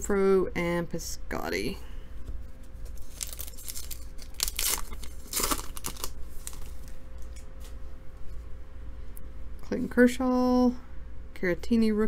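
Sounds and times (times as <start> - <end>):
plastic wrapper tearing and crinkling: 2.8 - 7.4.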